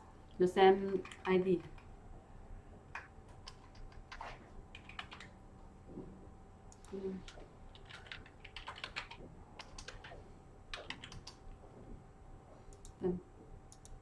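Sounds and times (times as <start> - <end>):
computer keyboard typing: 0.8 - 1.9, 2.9 - 5.4, 6.8 - 11.5.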